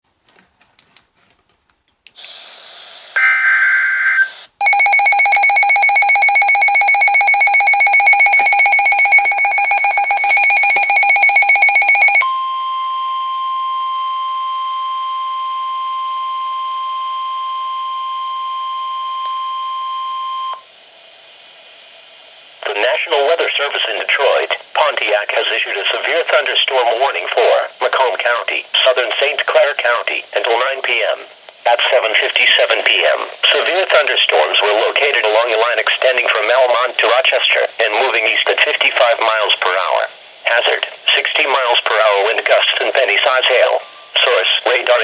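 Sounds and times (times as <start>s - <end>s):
faint static: 0.1s - 45.0s
steady high warning tone: 4.6s - 20.7s.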